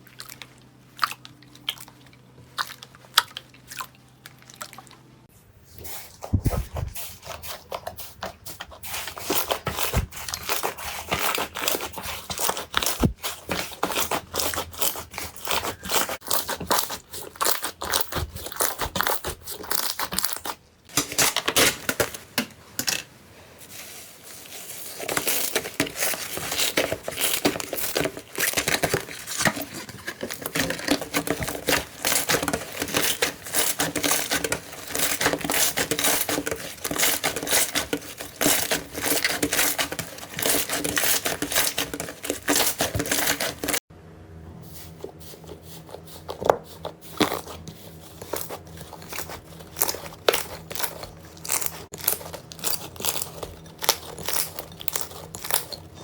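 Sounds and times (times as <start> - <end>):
slime crackling and popping: 49.1 - 55.9.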